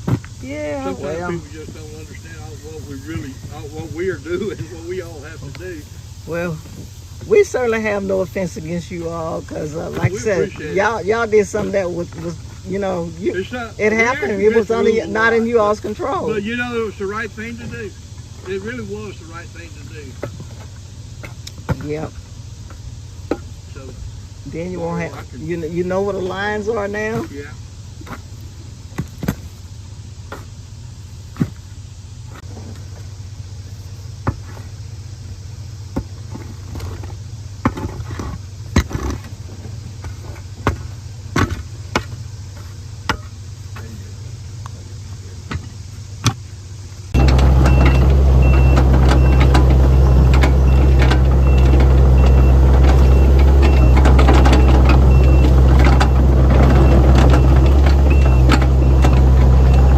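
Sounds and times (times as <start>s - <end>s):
heavy machine engine running: 47.1s - 59.9s
reversing alarm beeping: 47.2s - 59.9s.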